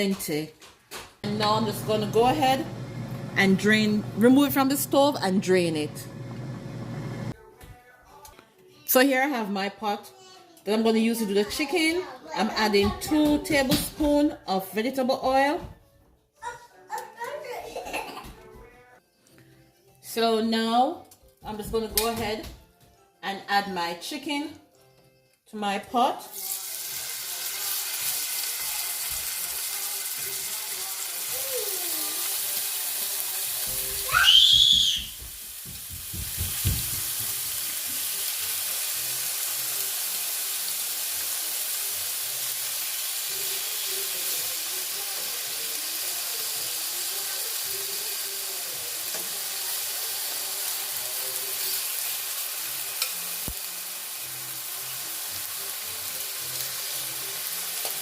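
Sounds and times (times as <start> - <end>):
chicken sizzling in oil: 26.3 - 58.0.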